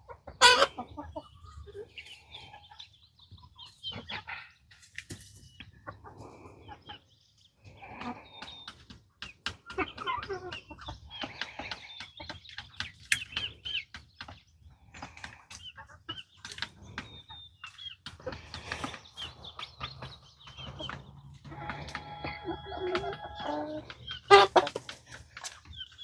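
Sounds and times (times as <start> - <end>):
hens clucking: 0.0 - 26.0.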